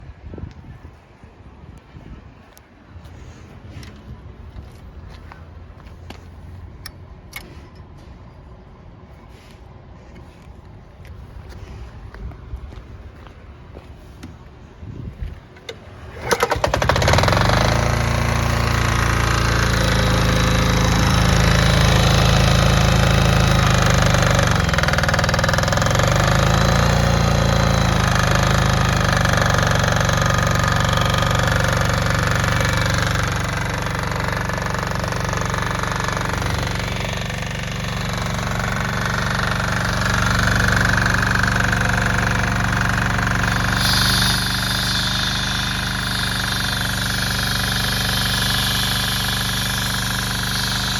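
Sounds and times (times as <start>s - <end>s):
small diesel engine running: 14.7s - 50.9s.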